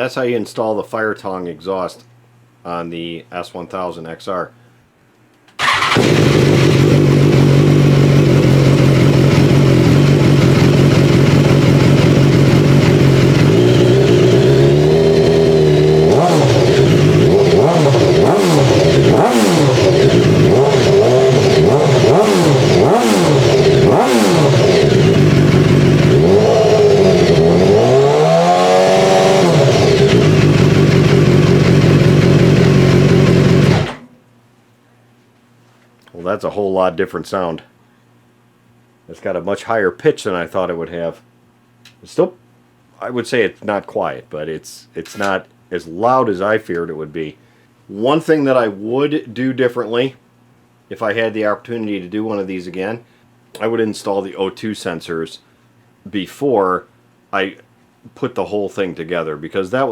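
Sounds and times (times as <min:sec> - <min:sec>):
motorcycle engine idling and revving: 0:05.6 - 0:34.0.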